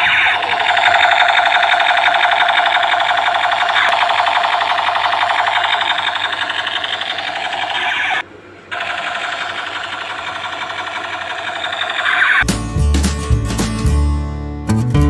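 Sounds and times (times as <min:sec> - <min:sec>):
toy gun rattling buzz: 0:00.0 - 0:12.4.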